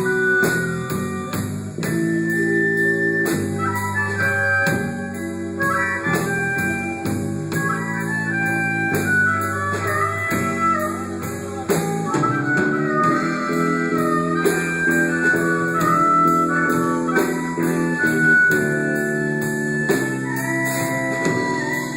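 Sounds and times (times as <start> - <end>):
band with guitar and drums: 0.0 - 21.9.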